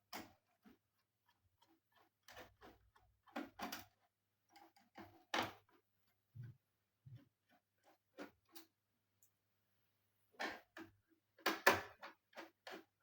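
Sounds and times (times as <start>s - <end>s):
clicks and knocks of parts: 10.4s - 13.0s.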